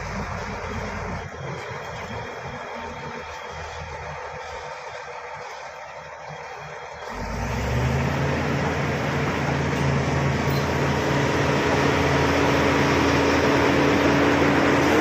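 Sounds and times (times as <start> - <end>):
bulldozer diesel engine: 0.0 - 15.0.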